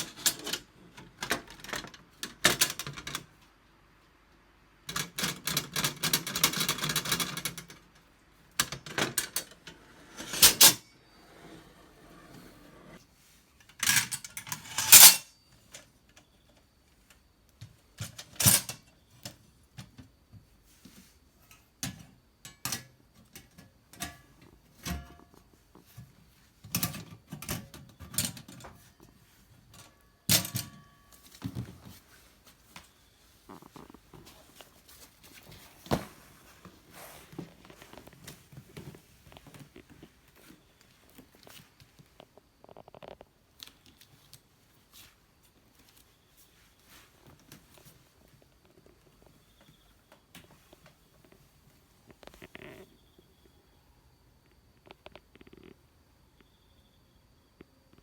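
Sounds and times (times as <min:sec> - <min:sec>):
rough rubbing noise: 0:11.2 - 0:13.0
metal parts clinking: 0:13.8 - 0:15.3.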